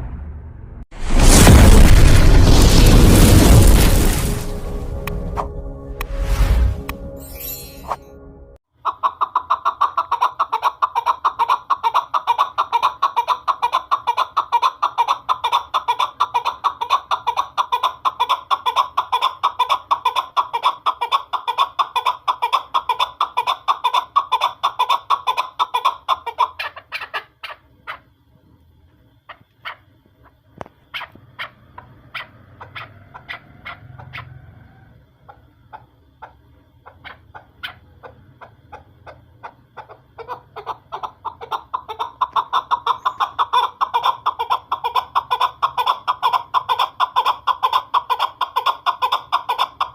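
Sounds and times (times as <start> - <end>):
partridge calling chuk notes: 35.3 - 46.0.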